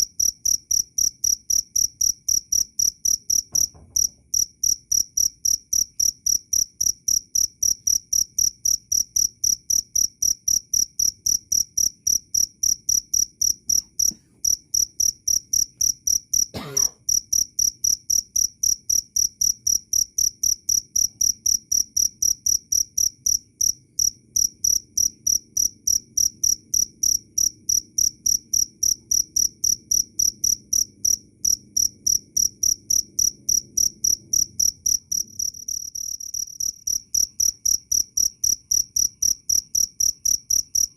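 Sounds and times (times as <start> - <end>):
cricket chirping: 0.0 - 40.9.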